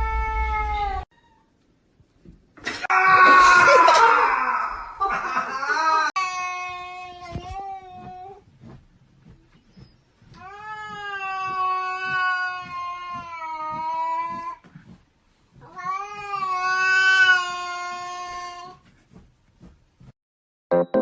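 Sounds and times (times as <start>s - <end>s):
cat yowling: 10.5s - 14.6s.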